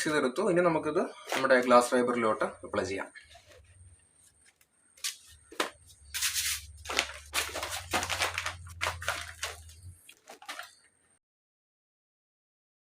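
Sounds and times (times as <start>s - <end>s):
scraping and rustling strokes: 3.2s - 10.9s.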